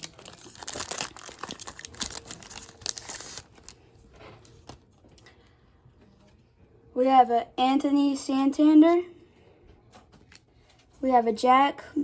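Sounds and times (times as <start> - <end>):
foil pack tearing and crinkling: 0.0 - 3.8.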